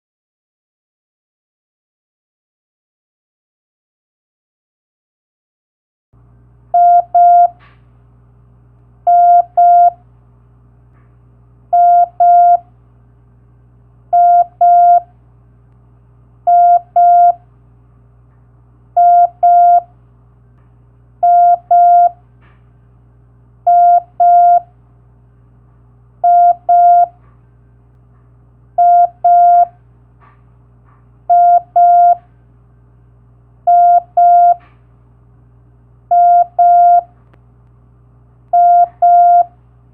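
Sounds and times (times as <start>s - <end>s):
faint low hum: 6.2s - 39.9s
morse code beeps: 6.8s - 7.6s, 9.1s - 10.0s, 11.8s - 12.6s, 14.2s - 15.0s, 16.5s - 17.4s, 19.0s - 19.9s, 21.2s - 22.2s, 23.7s - 24.7s, 26.2s - 27.1s, 28.8s - 29.7s, 31.3s - 32.2s, 33.7s - 34.6s, 36.1s - 37.1s, 38.6s - 39.5s.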